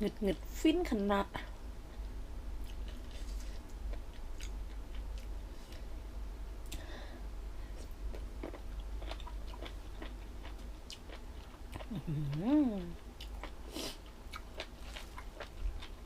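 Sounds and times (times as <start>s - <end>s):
person chewing crunchy food: 2.6s - 5.9s, 7.7s - 16.0s.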